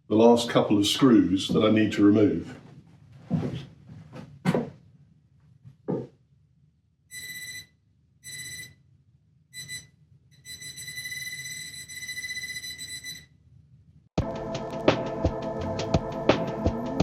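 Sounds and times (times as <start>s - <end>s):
pinpointer probe beeping: 7.1s - 8.7s, 9.6s - 13.2s.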